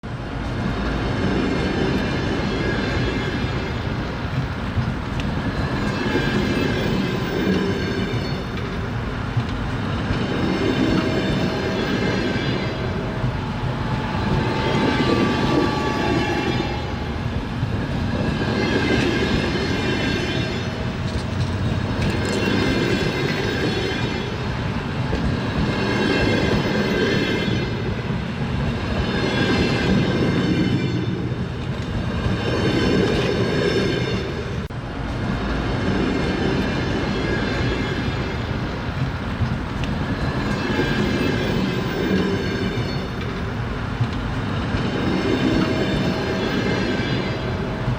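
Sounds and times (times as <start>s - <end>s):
train wheels clattering on rails: 0.0s - 47.9s
faint thin squeal: 11.3s - 19.4s.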